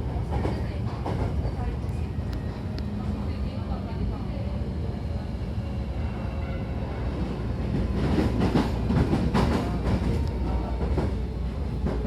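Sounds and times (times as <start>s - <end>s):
electric train rumbling: 0.0s - 12.0s.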